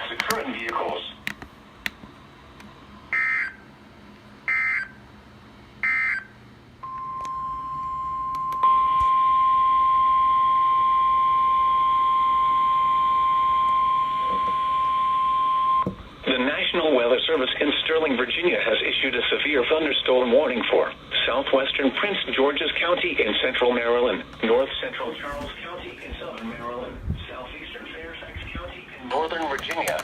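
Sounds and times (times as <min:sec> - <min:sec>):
long steady warning beep: 0:03.1 - 0:03.6, 0:04.4 - 0:05.0, 0:05.8 - 0:15.9.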